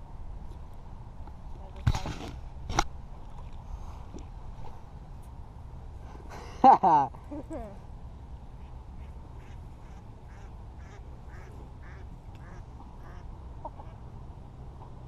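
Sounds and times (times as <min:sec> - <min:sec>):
low steady rumble: 0:00.0 - 0:15.0
duck quacking faintly: 0:08.6 - 0:14.0.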